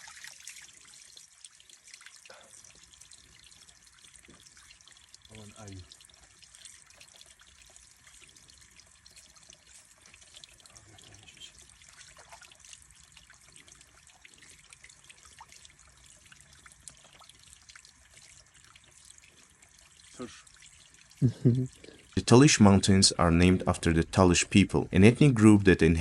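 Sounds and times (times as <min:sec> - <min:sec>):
water trickling and dripping: 0:00.0 - 0:26.0
soft hiss: 0:08.2 - 0:12.4.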